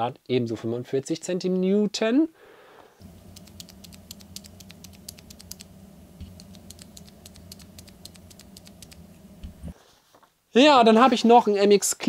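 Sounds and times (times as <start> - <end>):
mechanical key switches clicking: 3.0 - 9.6
low hum: 3.0 - 9.8.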